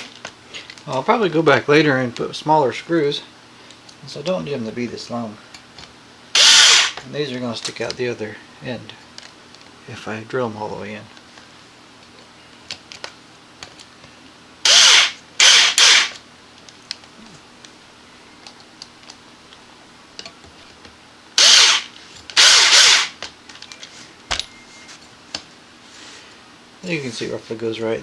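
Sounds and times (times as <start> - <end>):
power drill driving screws: 6.4 - 7.0, 14.6 - 16.2, 21.4 - 23.2.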